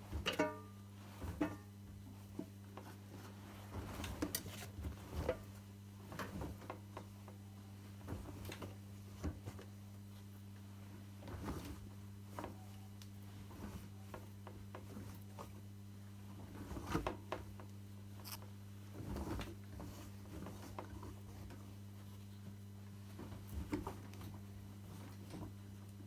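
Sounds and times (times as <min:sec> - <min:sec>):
washing machine low hum: 0:00.0 - 0:26.0.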